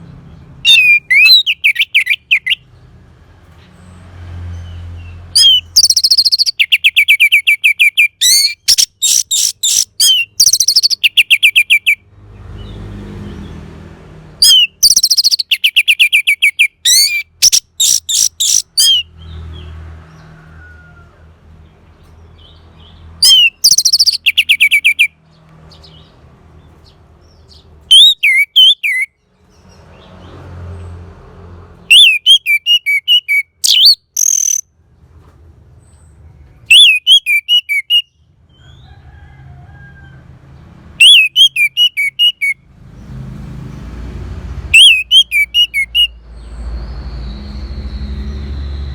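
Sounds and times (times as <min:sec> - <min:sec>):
thrush singing whistled notes: 0:00.6 - 0:02.6, 0:05.4 - 0:12.0, 0:14.4 - 0:19.2, 0:23.2 - 0:25.2, 0:27.9 - 0:29.2, 0:31.9 - 0:34.6, 0:36.7 - 0:38.2, 0:41.0 - 0:42.6, 0:44.7 - 0:48.9.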